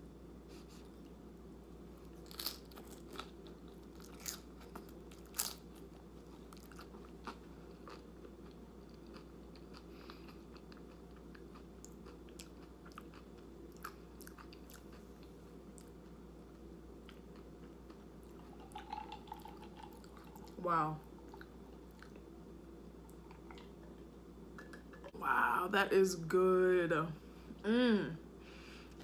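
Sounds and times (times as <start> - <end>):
chewing with small crunches: 1.9 - 25.2
crunching bites: 2.2 - 5.9.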